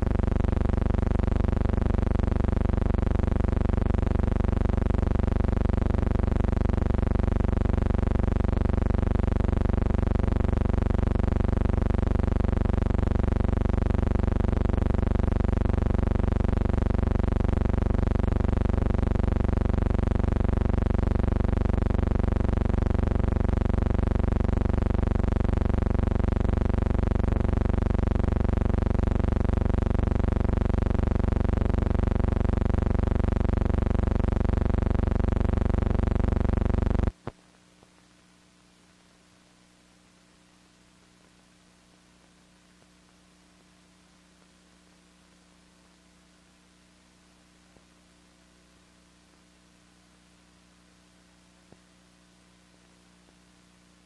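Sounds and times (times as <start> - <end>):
electrical mains hum: 0.0 - 54.0.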